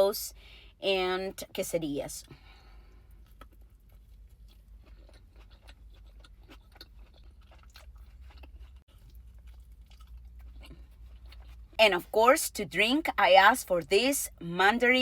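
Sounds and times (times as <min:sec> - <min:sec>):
low steady hum: 0:00.0 - 0:15.0
soft wet chewing: 0:02.3 - 0:11.8.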